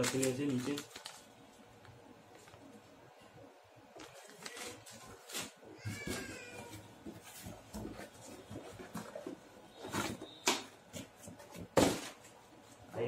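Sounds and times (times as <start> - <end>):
cat meowing: 5.8 - 6.7.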